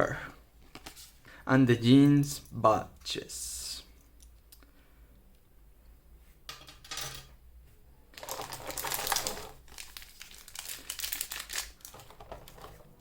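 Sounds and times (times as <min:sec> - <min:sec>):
packaging clicks: 0:08.2 - 0:12.6
packaging rustling: 0:08.2 - 0:13.0
plastic packaging crinkling: 0:08.2 - 0:13.0.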